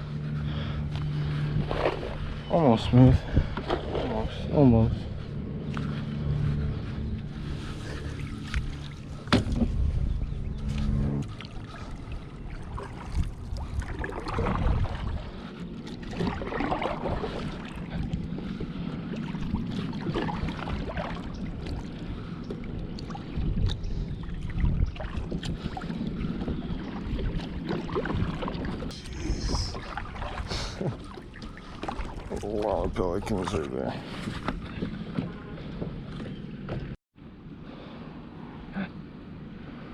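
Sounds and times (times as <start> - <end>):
low steady hum: 0.0 - 32.4
water lapping against hull: 0.0 - 37.0
paddle swishing water: 0.3 - 37.0.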